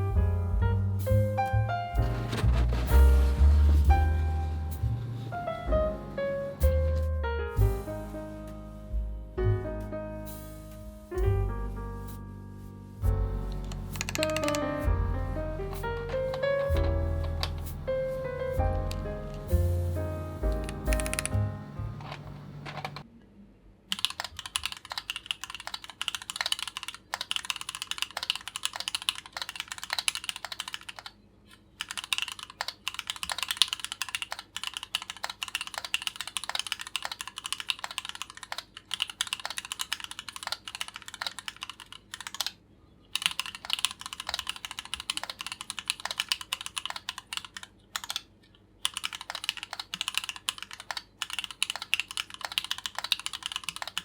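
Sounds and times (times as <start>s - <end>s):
fast typing on mechanical keyboard: 13.5s - 19.7s, 20.3s - 23.0s, 23.9s - 54.0s.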